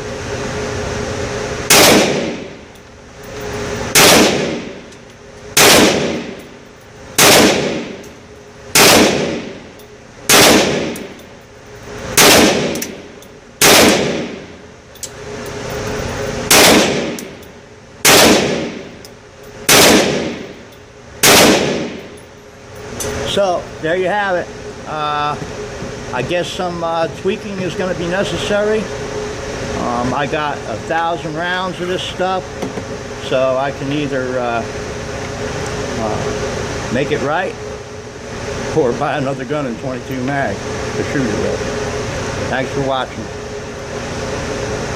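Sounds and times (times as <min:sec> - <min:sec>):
pistol shots with ringing tail: 0:01.7 - 0:02.6, 0:03.9 - 0:04.8, 0:05.6 - 0:06.4, 0:07.2 - 0:08.0, 0:08.7 - 0:09.6, 0:10.3 - 0:11.2, 0:12.2 - 0:14.5, 0:16.5 - 0:17.4, 0:18.0 - 0:19.0, 0:19.7 - 0:20.6, 0:21.2 - 0:22.2.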